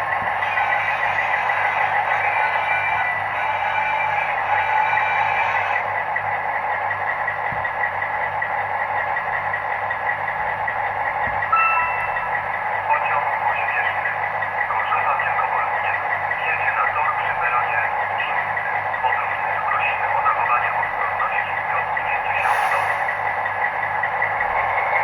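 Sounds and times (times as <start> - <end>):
tinny diesel engine sound: 0.0 - 25.0
short high tone: 11.6 - 12.2.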